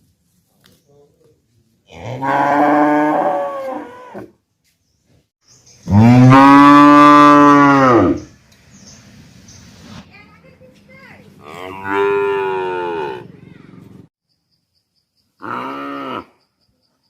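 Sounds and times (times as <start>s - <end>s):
cow mooing: 1.9s - 4.3s, 5.9s - 8.3s, 11.4s - 13.3s.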